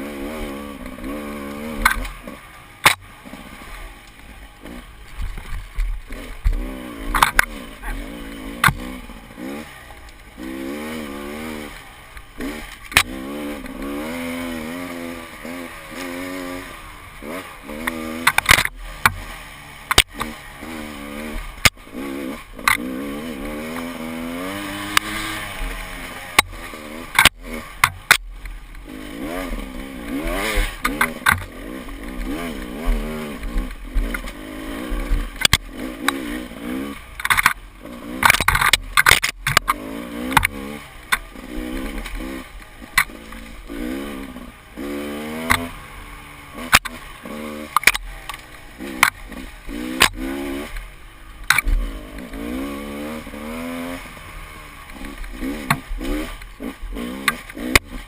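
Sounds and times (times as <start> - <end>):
dirt bike engine revving: 0.0 - 58.0
sharp knocks and clatter: 5.1 - 7.6, 8.6 - 8.9, 17.8 - 20.4, 26.3 - 28.3, 29.5 - 36.2, 37.2 - 37.6, 38.2 - 43.5, 46.6 - 49.2.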